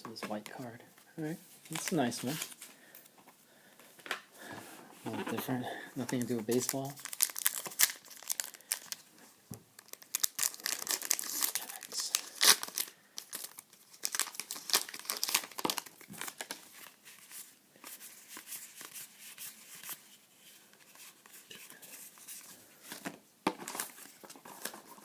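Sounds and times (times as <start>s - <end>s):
wrappers torn and crinkled: 6.2s - 9.0s, 9.8s - 16.6s.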